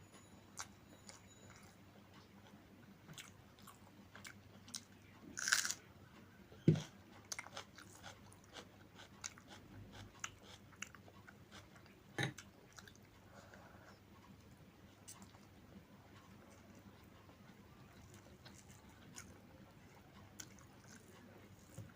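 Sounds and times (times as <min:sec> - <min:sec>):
person chewing: 0:03.1 - 0:05.8, 0:06.7 - 0:13.1, 0:18.0 - 0:19.3, 0:20.4 - 0:21.9.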